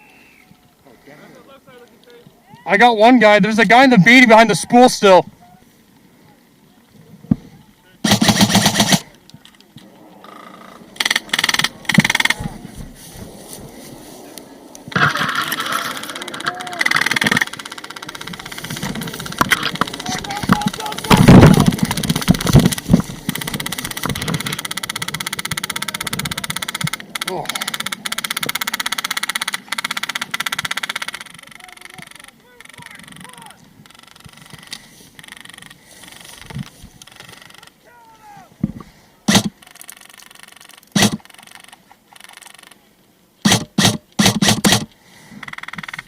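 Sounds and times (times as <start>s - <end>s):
airsoft rifle firing full auto: 8.0s - 9.1s, 40.9s - 41.3s, 43.4s - 44.9s
airsoft guns full-auto rattle: 8.0s - 9.6s, 10.2s - 12.4s, 14.9s - 37.8s, 39.3s - 42.8s, 43.4s - 46.0s
low knocks and thumps: 18.2s - 24.6s.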